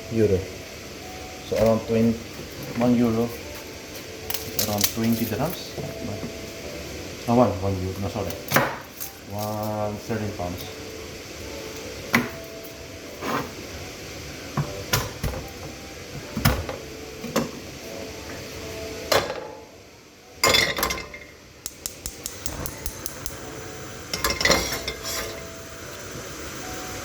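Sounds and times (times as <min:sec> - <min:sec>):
utensils and dishes clattering: 0:20.4 - 0:21.3, 0:24.1 - 0:25.4.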